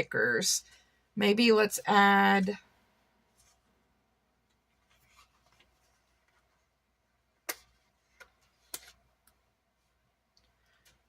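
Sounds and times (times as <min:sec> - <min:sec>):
soft paper rustling: 0:03.2 - 0:03.8, 0:04.5 - 0:07.0.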